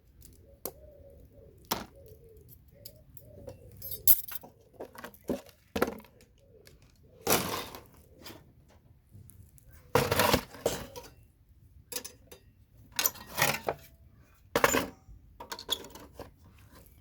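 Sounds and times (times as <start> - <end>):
metal clinking and clattering: 3.8 - 4.5.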